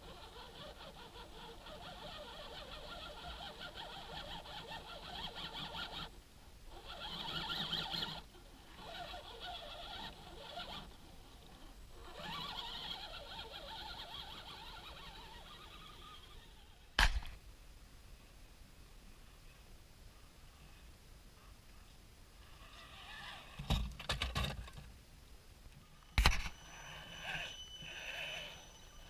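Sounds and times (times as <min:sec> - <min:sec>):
electric motor whining: 0:06.7 - 0:16.9, 0:26.2 - 0:29.0.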